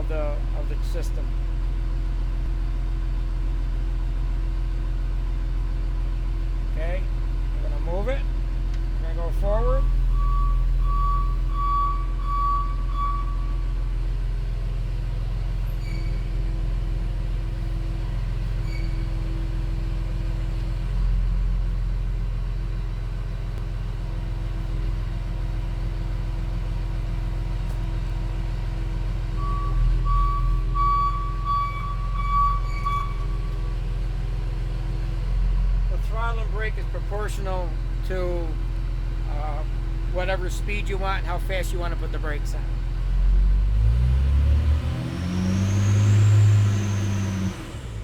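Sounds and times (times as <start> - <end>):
diesel engine running: 0.0 - 48.0
warning beeper beeps: 9.8 - 13.8, 29.4 - 33.6.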